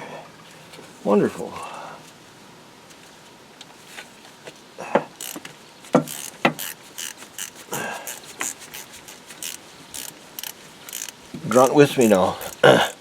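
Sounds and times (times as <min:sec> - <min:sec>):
hand ratchet clicking: 0:05.2 - 0:13.0.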